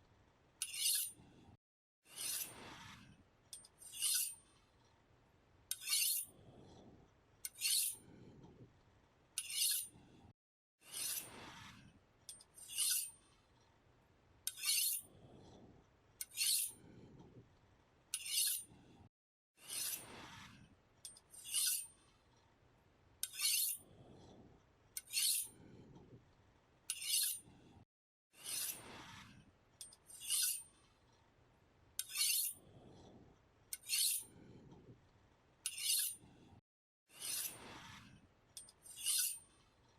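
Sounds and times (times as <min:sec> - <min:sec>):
knife blade scraping strokes: 0:00.6 - 0:01.2, 0:02.1 - 0:03.0, 0:03.6 - 0:04.4, 0:05.7 - 0:06.3, 0:07.4 - 0:08.0, 0:09.4 - 0:09.9, 0:10.8 - 0:13.2, 0:14.5 - 0:15.1, 0:16.2 - 0:16.8, 0:18.1 - 0:18.7, 0:19.6 - 0:21.9, 0:23.2 - 0:23.8, 0:25.0 - 0:25.6, 0:26.9 - 0:27.4, 0:28.4 - 0:30.7, 0:32.0 - 0:32.6, 0:33.7 - 0:34.4, 0:35.6 - 0:36.2, 0:37.1 - 0:39.5.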